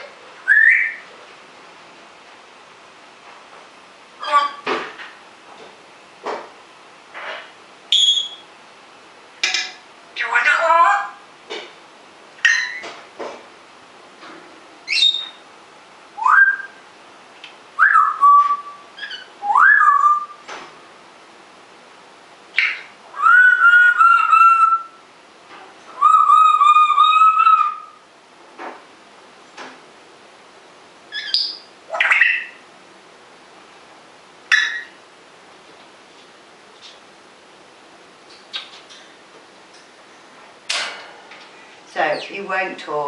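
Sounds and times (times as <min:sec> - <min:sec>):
parrot whistling: 0:00.4 - 0:01.0, 0:07.9 - 0:08.5, 0:14.9 - 0:15.4, 0:16.2 - 0:16.8, 0:17.8 - 0:20.4, 0:22.6 - 0:25.0, 0:26.0 - 0:28.0, 0:31.1 - 0:32.6, 0:34.5 - 0:35.0.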